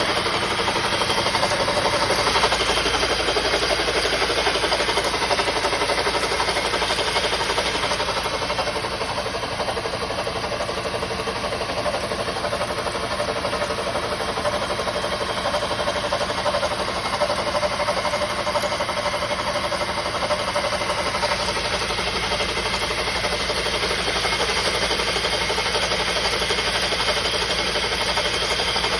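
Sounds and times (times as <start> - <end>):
diesel engine knocking: 0.0 - 28.9.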